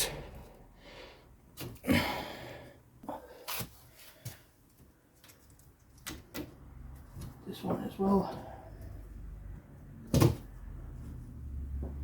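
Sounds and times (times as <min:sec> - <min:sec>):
loud breath: 0:00.0 - 0:04.5
small parts clicking and knocking: 0:05.1 - 0:07.4.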